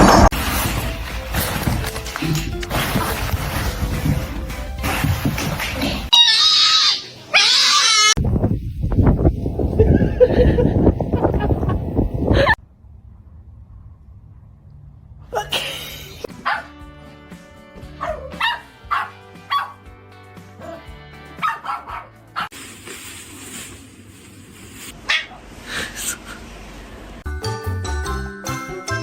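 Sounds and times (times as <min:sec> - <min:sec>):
background music: 0:00.4 - 0:06.1, 0:16.3 - 0:22.4, 0:27.3 - 0:29.0
dog barking: 0:16.4 - 0:16.7, 0:18.0 - 0:19.8, 0:20.6 - 0:22.5, 0:25.1 - 0:25.4.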